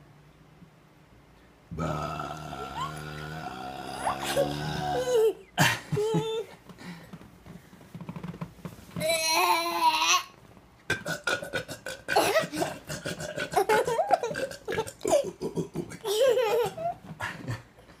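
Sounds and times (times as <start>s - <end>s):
man burping: 1.7s - 5.8s, 10.9s - 16.1s.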